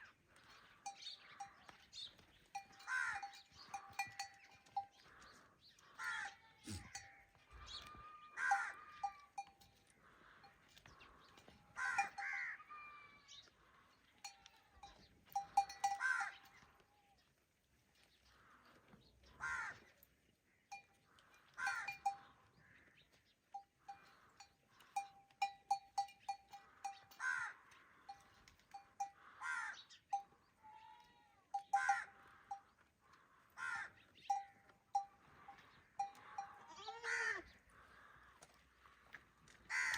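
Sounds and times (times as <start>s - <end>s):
goats bleating: 6.0s - 9.4s, 35.5s - 37.6s.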